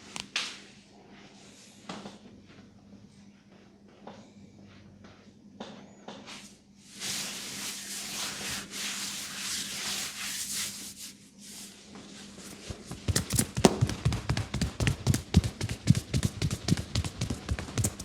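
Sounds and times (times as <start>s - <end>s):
hands rubbing hair: 6.9s - 18.0s
percussive head massage strikes: 12.6s - 18.0s.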